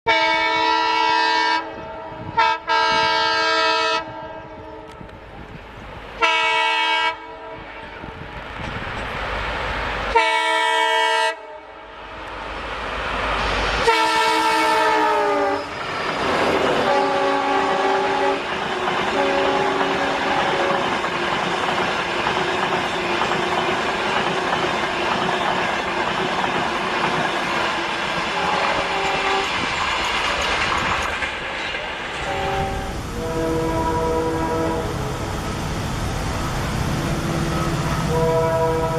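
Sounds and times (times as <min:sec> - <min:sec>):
train horn blasts: 0:00.1 - 0:05.1, 0:06.2 - 0:08.2, 0:10.1 - 0:11.9, 0:13.8 - 0:15.7, 0:16.6 - 0:20.9, 0:28.3 - 0:29.6, 0:32.2 - 0:35.4, 0:36.9 - 0:38.9
passing train running noise: 0:00.1 - 0:38.9.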